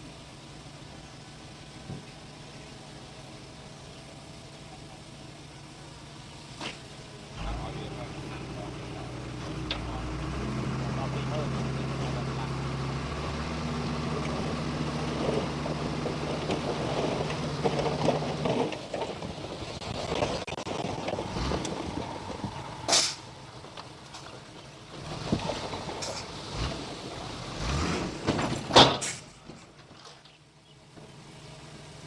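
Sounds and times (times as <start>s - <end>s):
diesel engine running: 0.0s - 32.0s
loud bursts of hiss: 22.8s - 23.3s.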